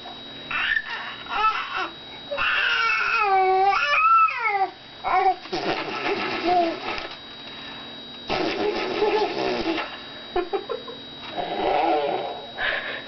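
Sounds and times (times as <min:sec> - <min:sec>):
baby blowing raspberries: 0:05.4 - 0:07.0, 0:08.3 - 0:09.9.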